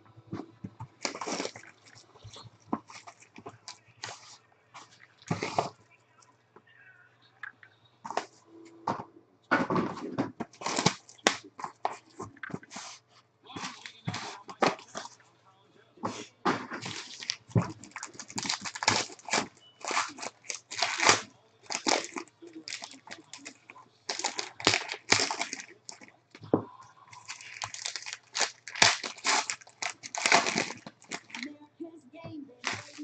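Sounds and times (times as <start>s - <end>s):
plastic packaging tearing and crinkling: 1.0s - 4.3s, 4.9s - 5.8s, 9.7s - 12.9s, 16.8s - 26.2s, 27.1s - 31.5s, 32.6s - 33.0s.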